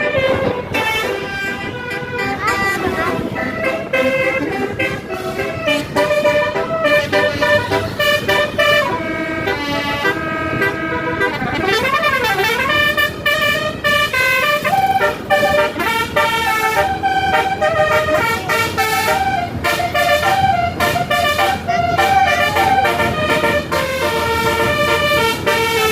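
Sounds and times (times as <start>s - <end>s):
engine noise: 0.0s - 25.9s
multi-tone musical bus horn: 0.0s - 25.9s.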